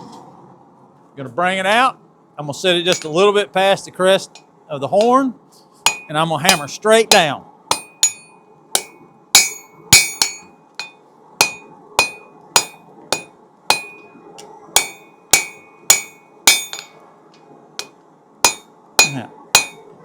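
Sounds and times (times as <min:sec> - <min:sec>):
hammer striking hot steel on anvil: 0:02.9 - 0:03.2, 0:05.9 - 0:14.1, 0:14.8 - 0:17.0, 0:17.8 - 0:19.9.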